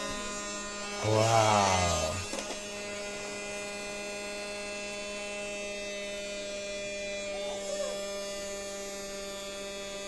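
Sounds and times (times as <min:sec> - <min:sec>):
toy vacuum motor humming: 0:00.0 - 0:10.0.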